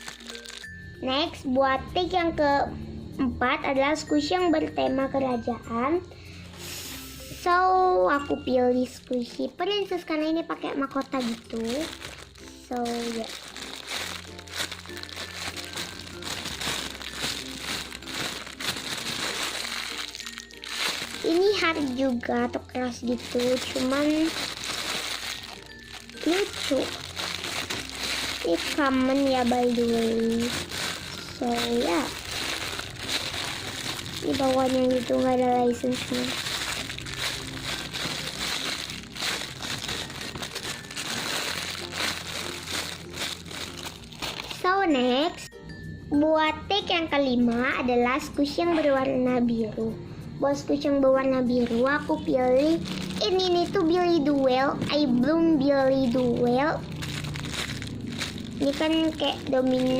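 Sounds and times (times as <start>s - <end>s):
squishy toy crinkling: 0.0s - 0.8s, 10.8s - 22.1s, 22.9s - 44.7s, 52.6s - 54.5s, 56.0s - 59.9s
soft background music: 0.0s - 59.9s.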